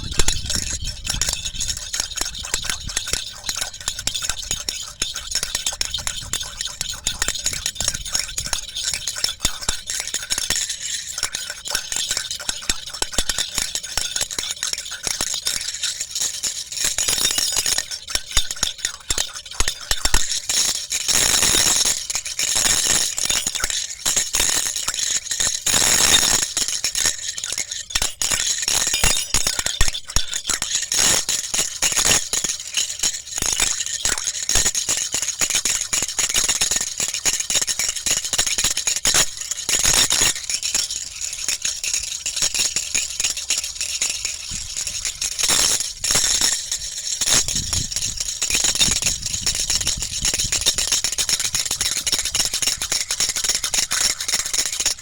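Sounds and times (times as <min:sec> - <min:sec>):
dense rattle of fine clicks: 0:36.8 - 0:55.0.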